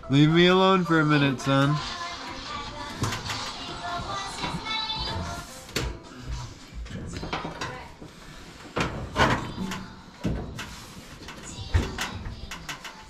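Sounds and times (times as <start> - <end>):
dryer parts knocking and clattering: 2.7 - 6.0, 6.8 - 13.0.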